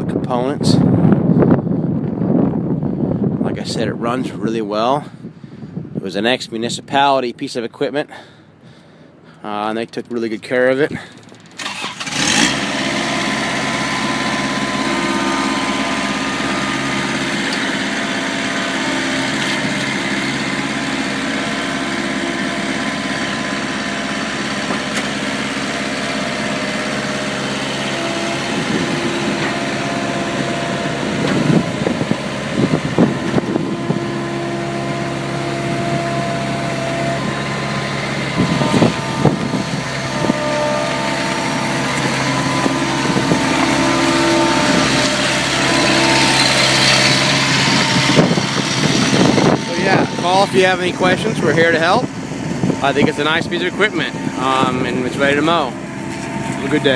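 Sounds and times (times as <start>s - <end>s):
diesel mower engine running: 8.1s - 56.9s
short noisy bursts: 11.6s - 56.9s.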